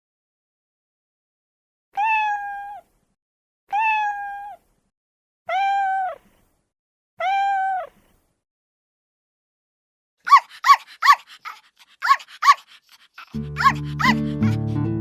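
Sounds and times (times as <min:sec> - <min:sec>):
cat meowing: 0:02.0 - 0:02.9, 0:03.7 - 0:04.6, 0:05.5 - 0:06.2, 0:07.2 - 0:08.0.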